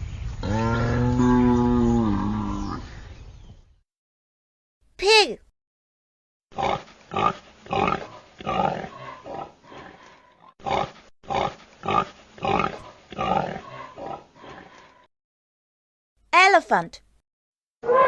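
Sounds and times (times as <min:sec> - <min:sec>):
pig grunting: 0:06.6 - 0:15.1.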